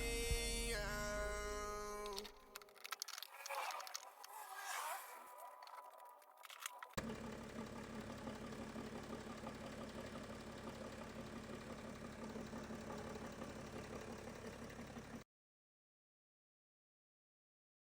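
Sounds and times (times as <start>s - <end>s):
diesel engine idling: 6.9s - 15.2s.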